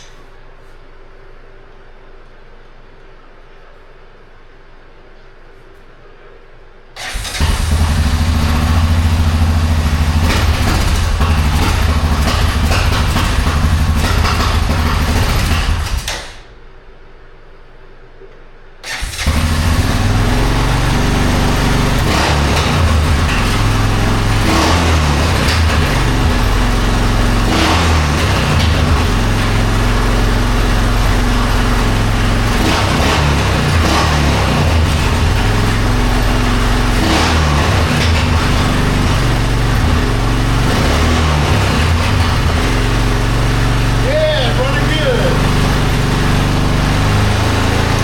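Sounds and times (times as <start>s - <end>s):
atv engine revving: 7.0s - 16.2s, 18.8s - 48.0s.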